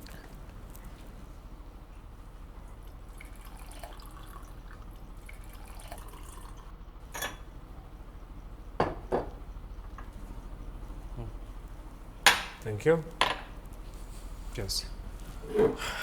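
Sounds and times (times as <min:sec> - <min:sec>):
liquor trickling into glasses: 0:02.7 - 0:07.4
glasses set down knocking: 0:08.8 - 0:09.4, 0:12.3 - 0:12.6, 0:13.2 - 0:13.5.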